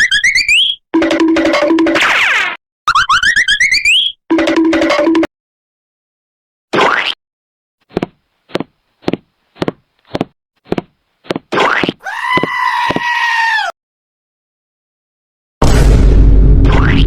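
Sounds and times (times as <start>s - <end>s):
high-pitched animal-like cry: 12.0s - 13.8s.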